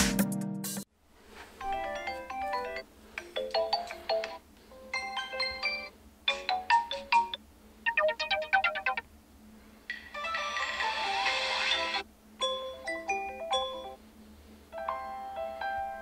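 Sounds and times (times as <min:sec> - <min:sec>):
phone ringtone melody: 0:01.6 - 0:02.8, 0:03.4 - 0:09.0, 0:10.1 - 0:14.0.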